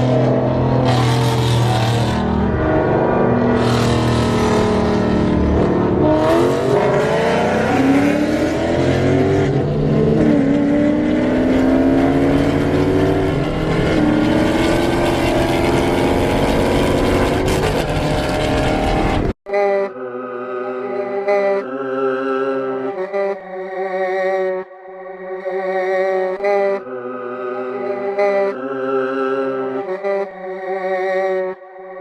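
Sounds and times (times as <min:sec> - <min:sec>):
car engine accelerating hard: 0:00.0 - 0:19.4.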